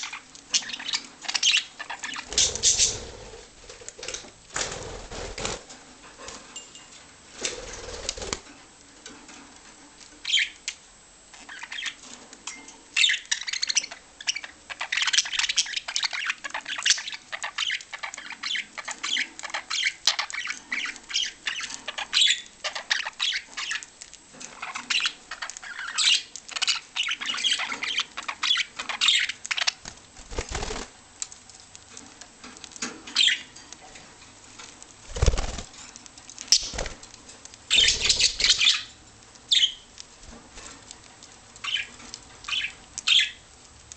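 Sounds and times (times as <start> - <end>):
budgerigars chirping: 0.0 - 3.1, 13.0 - 23.9, 24.6 - 29.8, 36.5 - 36.9, 37.7 - 39.8, 41.6 - 41.9, 42.5 - 43.4
wings flapping: 2.2 - 5.7, 7.4 - 8.5, 29.5 - 31.0, 35.1 - 35.8, 36.5 - 37.1.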